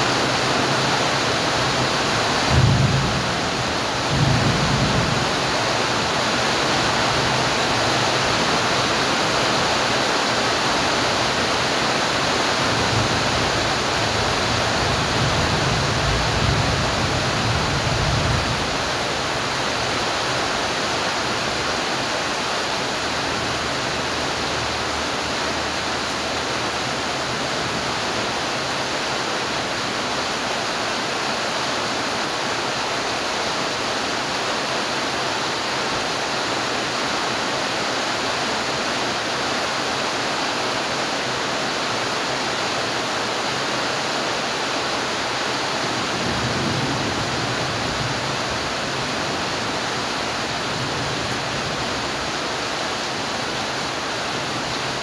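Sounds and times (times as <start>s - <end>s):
steady rain hiss: 0.0s - 55.0s.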